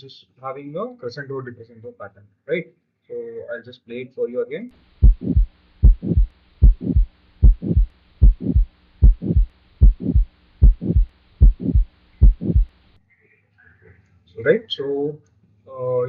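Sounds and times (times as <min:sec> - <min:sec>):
faint hum and hiss: 0:00.0 - 0:16.0
swishing heart murmur: 0:05.0 - 0:12.7
heartbeat lub-dub: 0:05.0 - 0:12.8.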